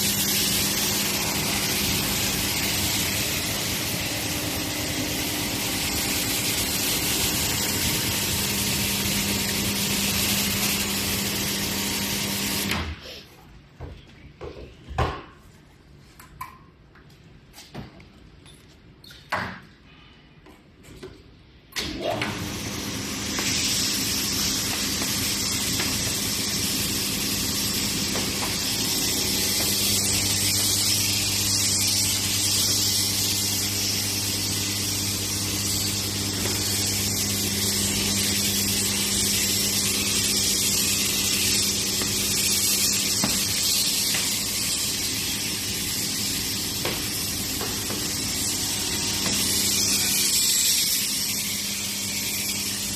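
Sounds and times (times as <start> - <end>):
pump motor hum: 0.0 - 13.0, 21.8 - 52.9
water jet spraying: 22.6 - 51.5.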